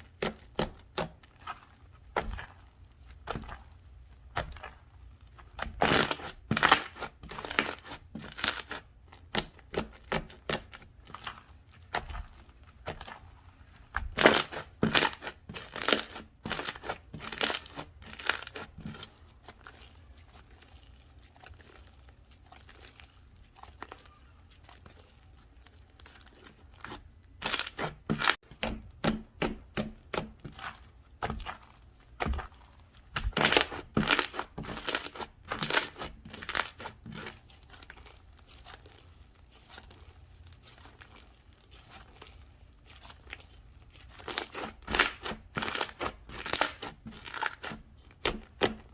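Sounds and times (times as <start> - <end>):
slime squished by hand: 0.0 - 48.9.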